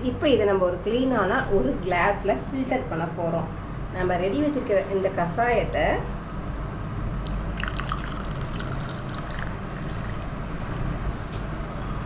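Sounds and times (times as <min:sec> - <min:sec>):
liquid trickling into a glass: 0:07.2 - 0:11.3.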